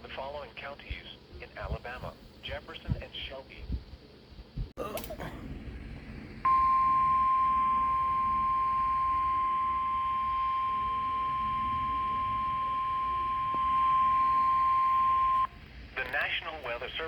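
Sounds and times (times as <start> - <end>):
steady alarm beep: 6.4 - 15.6.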